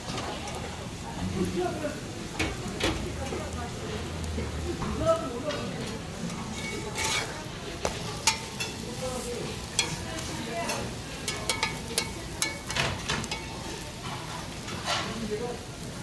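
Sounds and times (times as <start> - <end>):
pancakes frying in oil: 0.0 - 16.0
utensil scraping a pan: 6.2 - 15.2.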